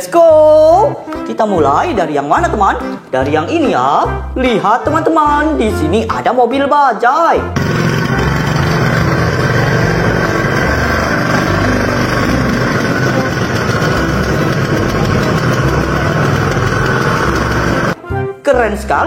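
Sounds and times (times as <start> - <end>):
small engine running: 7.6 - 18.0.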